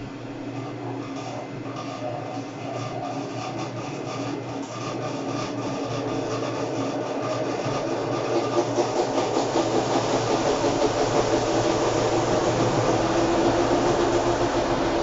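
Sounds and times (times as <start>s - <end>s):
washing machine churning: 0.0s - 15.0s
steady motor tone: 9.8s - 15.0s.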